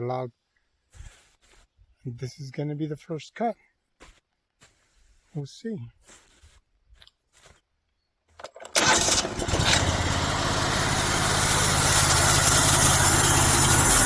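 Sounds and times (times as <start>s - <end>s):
sawmill engine running: 8.7s - 14.0s.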